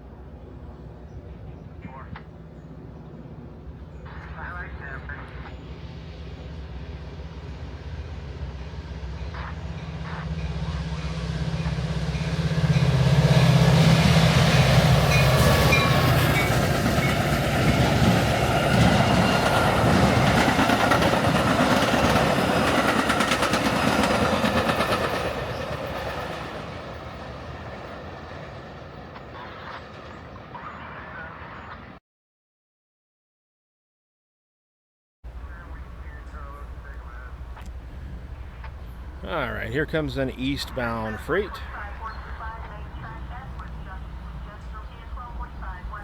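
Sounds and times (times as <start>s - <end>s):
diesel locomotive drone: 0.0s - 32.0s, 35.3s - 46.0s
train wheels clacking on rail joints: 13.8s - 26.5s.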